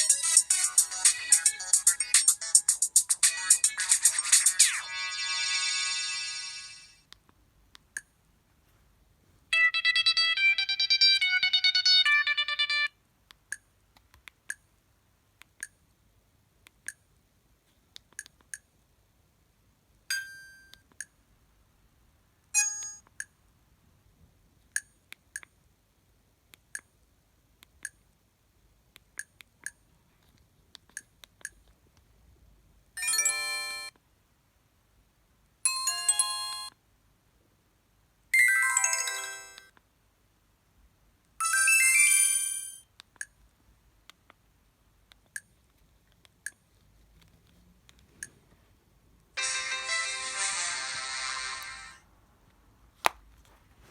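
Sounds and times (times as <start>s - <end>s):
bright melodic ringtone: 0.0s - 7.0s, 9.5s - 12.9s, 33.0s - 33.9s, 35.7s - 36.7s, 38.4s - 39.7s, 41.4s - 42.8s, 49.4s - 51.9s.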